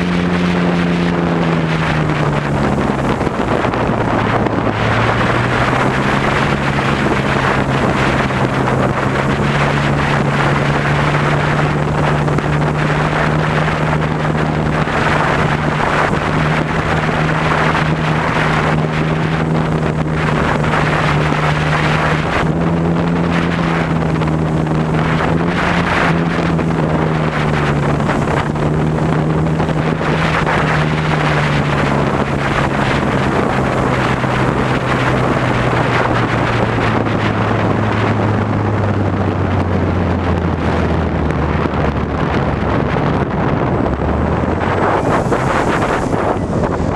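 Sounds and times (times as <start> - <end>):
airplane engine and propeller: 0.0 - 46.9
wind on microphone: 0.0 - 46.9.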